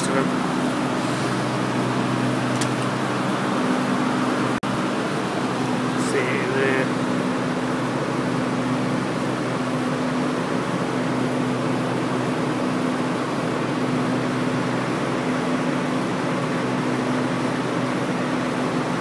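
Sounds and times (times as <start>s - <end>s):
air conditioner fan rushing: 0.0s - 19.0s.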